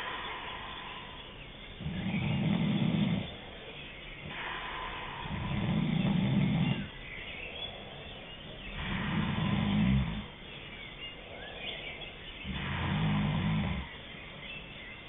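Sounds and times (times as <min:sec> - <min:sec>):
person snoring: 0:00.0 - 0:10.4, 0:12.4 - 0:14.0
quiet breathing: 0:00.0 - 0:15.0.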